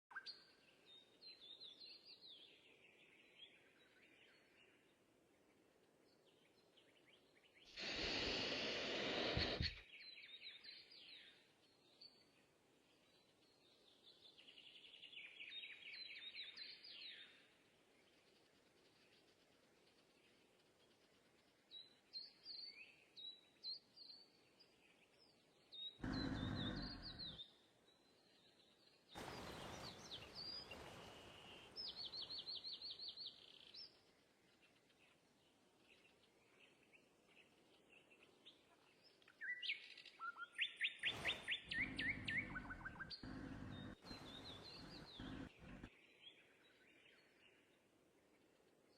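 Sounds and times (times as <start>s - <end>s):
small birds chirping: 0.1s - 48.9s.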